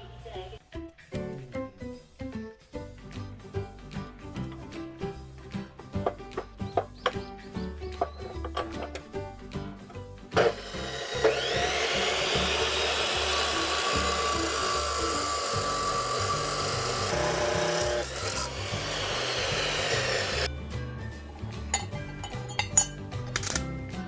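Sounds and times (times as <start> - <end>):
power tool grinding: 10.4 - 20.5.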